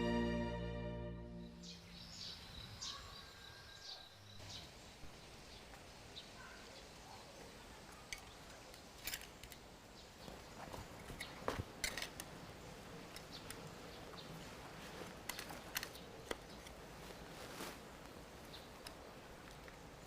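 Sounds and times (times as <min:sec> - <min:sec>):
faint outdoor background noise: 0:00.0 - 0:20.0
bird chirps: 0:01.4 - 0:06.8.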